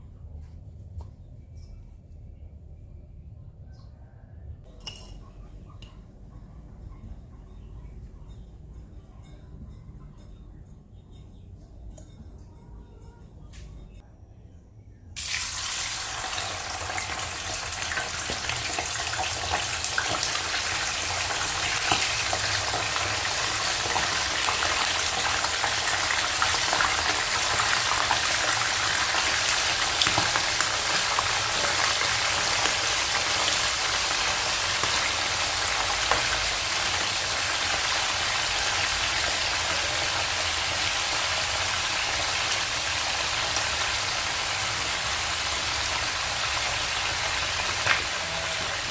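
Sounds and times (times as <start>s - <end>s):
food sizzling in hot oil: 15.2s - 48.9s.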